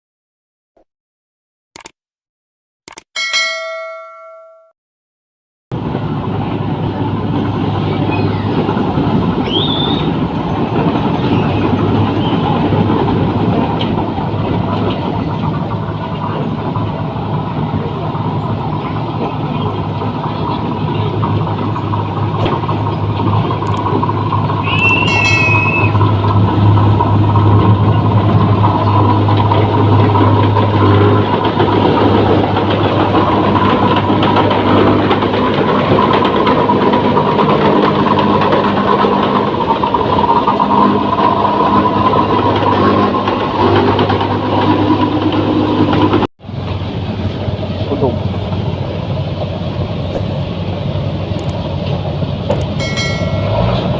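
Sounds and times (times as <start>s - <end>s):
combine harvester engine running: 5.7s - 53.9s.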